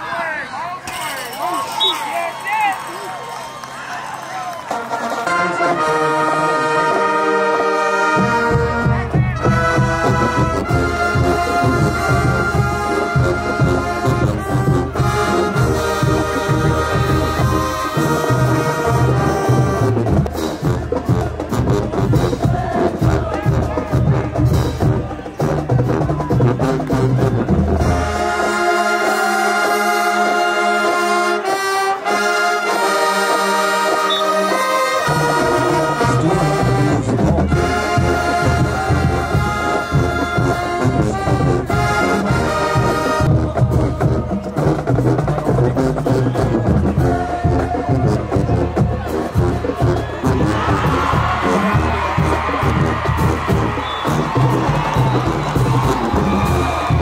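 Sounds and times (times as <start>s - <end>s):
brass horns playing chords: 4.7s - 57.0s
heavy low drum beat: 19.3s - 28.1s, 36.2s - 57.0s.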